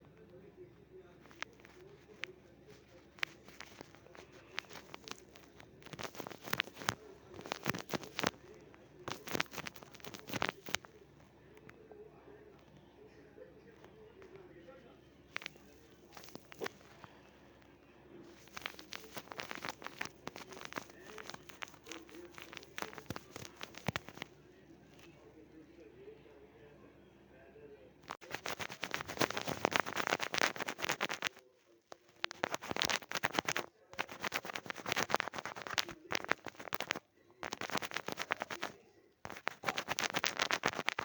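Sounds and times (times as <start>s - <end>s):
sharp crackling clicks: 1.2s - 11.0s, 18.3s - 24.3s, 28.0s - 41.0s
light clicks and taps: 15.2s - 25.2s.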